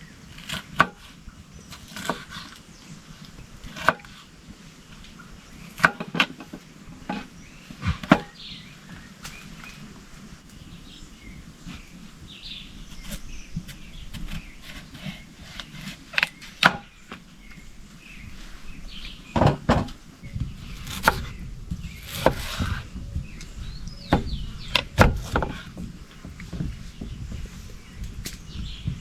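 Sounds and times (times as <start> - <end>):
faint birdsong: 0.0 - 29.0
scraping rustle: 0.0 - 29.0
sharp wooden knocks: 5.8 - 8.4, 19.3 - 20.0, 24.0 - 29.0.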